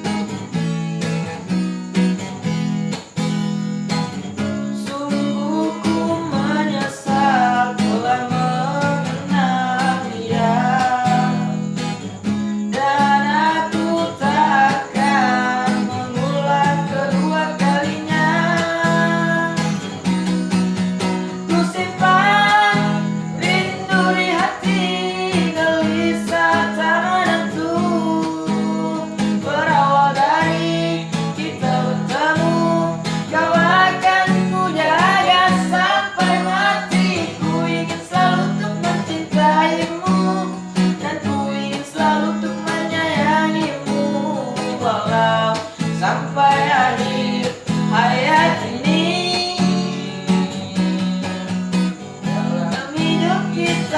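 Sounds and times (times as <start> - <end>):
acoustic guitar strumming: 0.0 - 53.9
person singing: 4.4 - 53.9.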